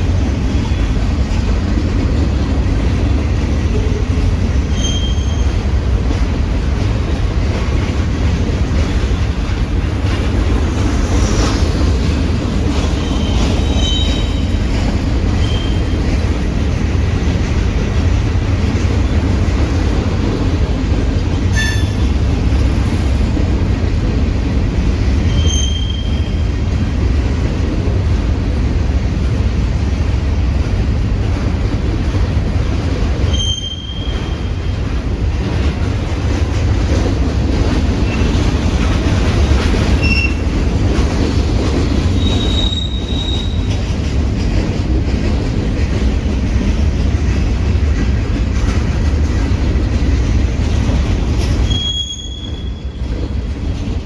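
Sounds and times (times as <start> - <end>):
freight train cars rumbling: 0.0 - 54.0
high-pitched wheel squeals: 4.7 - 5.7, 13.0 - 14.5, 15.4 - 16.0, 21.5 - 22.0, 25.3 - 26.4, 33.3 - 34.4, 40.0 - 40.4, 42.2 - 43.8, 51.6 - 52.9.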